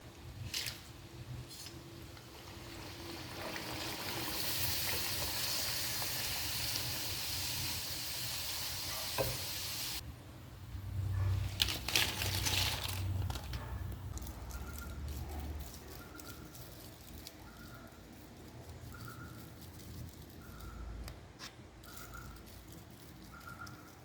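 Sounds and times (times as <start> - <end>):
chips sizzling in hot oil: 2.2 - 10.0.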